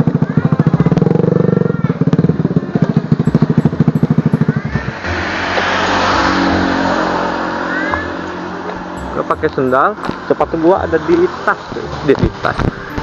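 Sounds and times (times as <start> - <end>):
motorcycle engine running: 0.0 - 13.0
rush of wind: 3.6 - 9.0.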